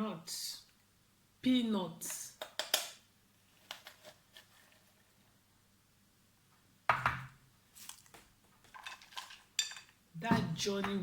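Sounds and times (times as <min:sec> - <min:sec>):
kitchen utensils clicking: 0:08.8 - 0:10.0.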